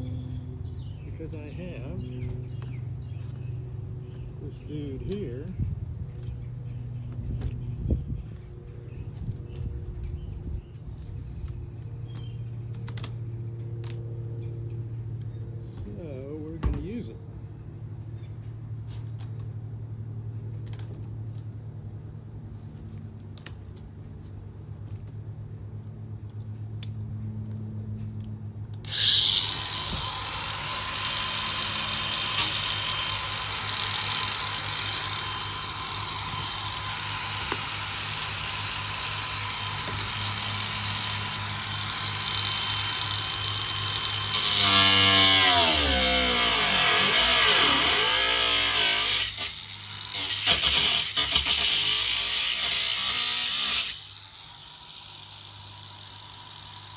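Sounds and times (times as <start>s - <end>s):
power tool cutting sheet metal: 28.8s - 56.9s.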